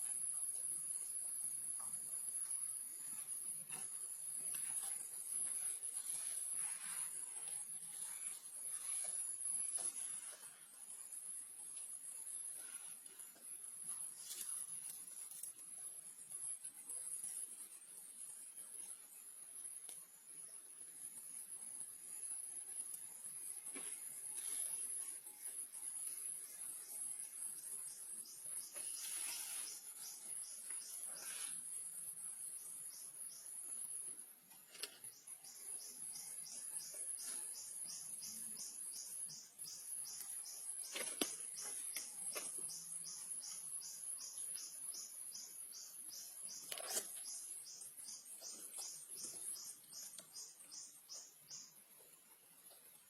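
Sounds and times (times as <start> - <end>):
insect chirping: 0.0 - 52.6
insects high-pitched drone: 35.1 - 51.7.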